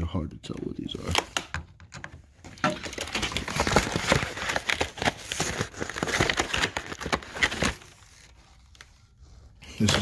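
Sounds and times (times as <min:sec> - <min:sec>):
plastic packaging crinkling: 0:02.5 - 0:08.8.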